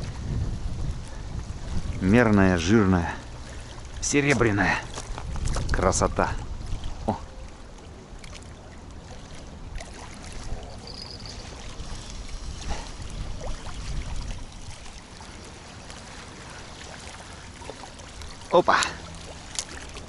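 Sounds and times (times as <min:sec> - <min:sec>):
strong wind buffeting microphone: 0:00.0 - 0:02.9, 0:04.4 - 0:07.1, 0:09.6 - 0:15.0
water lapping: 0:00.0 - 0:20.0.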